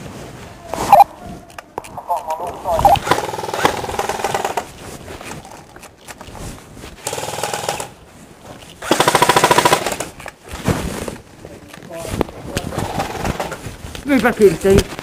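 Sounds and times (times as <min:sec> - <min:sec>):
airsoft guns firing bursts: 0:03.0 - 0:04.7, 0:07.0 - 0:08.0, 0:08.8 - 0:10.1.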